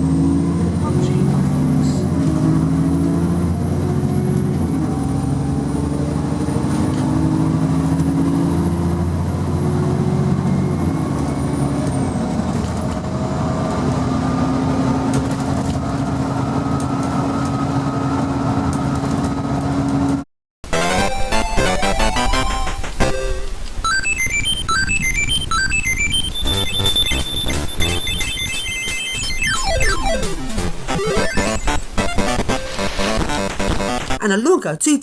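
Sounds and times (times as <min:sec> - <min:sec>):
bus engine pulling away: 0:00.0 - 0:20.2.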